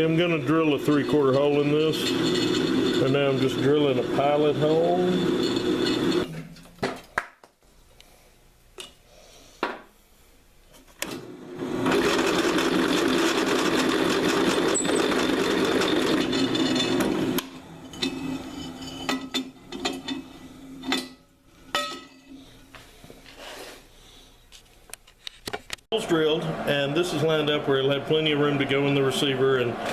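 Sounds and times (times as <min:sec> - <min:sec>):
electric drill boring through metal: 0:00.9 - 0:06.3, 0:11.8 - 0:18.4.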